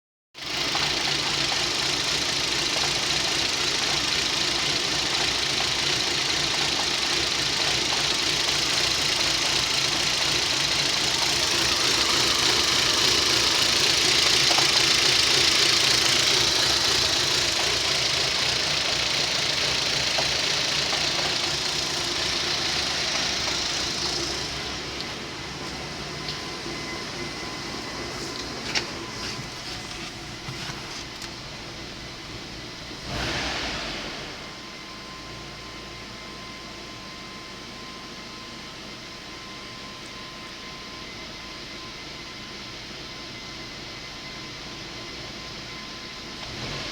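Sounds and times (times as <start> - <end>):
car engine idling roughly: 0.4 - 34.8.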